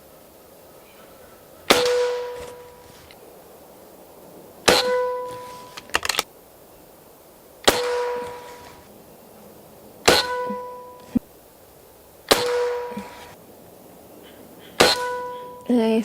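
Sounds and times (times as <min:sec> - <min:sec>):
metal target ringing: 0:01.7 - 0:02.9, 0:04.7 - 0:05.8, 0:07.7 - 0:08.6, 0:10.1 - 0:11.1, 0:12.3 - 0:13.3, 0:14.8 - 0:15.7
air rifle shots: 0:01.7 - 0:03.1, 0:04.6 - 0:06.3, 0:07.6 - 0:08.9, 0:10.0 - 0:11.2, 0:12.3 - 0:13.4, 0:14.8 - 0:15.6.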